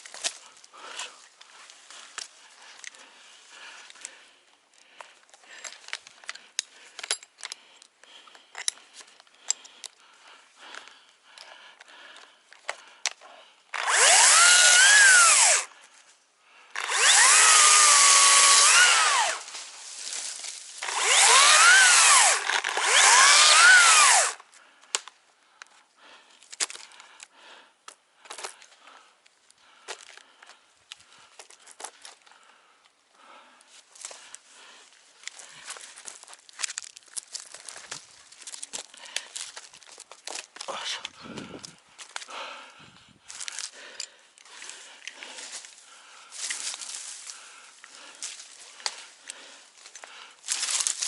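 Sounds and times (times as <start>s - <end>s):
chainsaw cutting wood: 13.7s - 15.7s, 16.7s - 19.6s, 20.8s - 24.5s.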